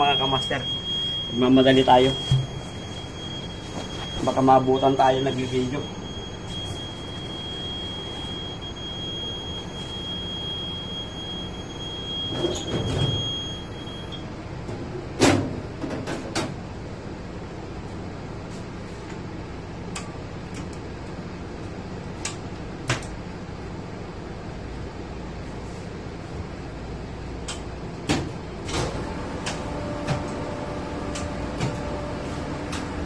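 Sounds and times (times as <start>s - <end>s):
power plant machinery drone: 28.7s - 33.0s.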